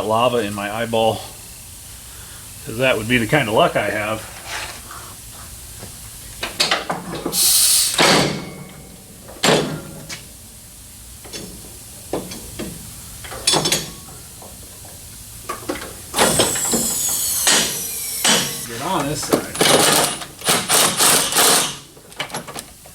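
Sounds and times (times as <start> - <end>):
burst of hiss: 7.3 - 8.5, 16.2 - 19.5.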